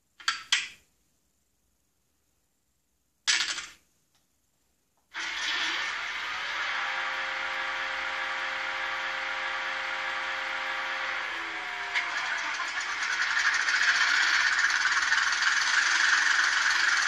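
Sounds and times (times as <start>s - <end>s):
click: 4.1s - 4.3s.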